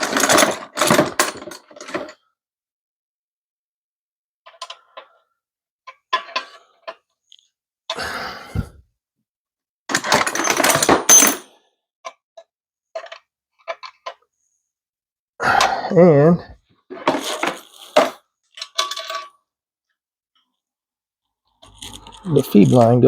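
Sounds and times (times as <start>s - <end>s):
metal parts rattling: 0.0s - 2.2s, 9.9s - 11.5s, 16.9s - 19.4s, 21.6s - 23.0s.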